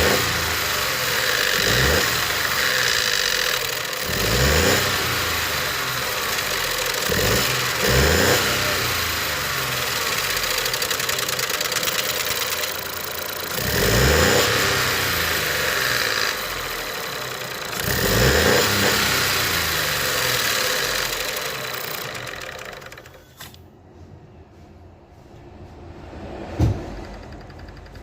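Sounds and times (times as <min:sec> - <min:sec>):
car engine running and revving: 0:00.0 - 0:23.0
thump: 0:26.5 - 0:27.2.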